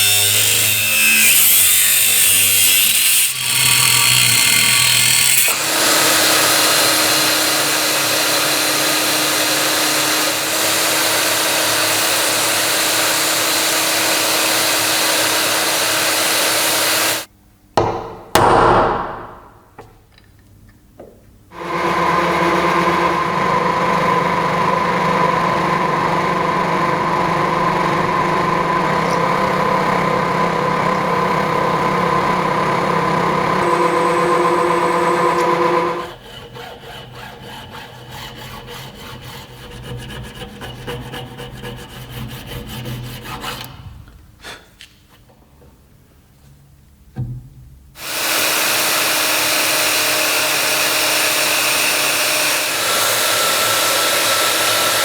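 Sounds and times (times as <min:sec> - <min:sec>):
power tool humming and whining: 0:00.0 - 0:17.3, 0:21.5 - 0:36.2, 0:48.0 - 0:55.0.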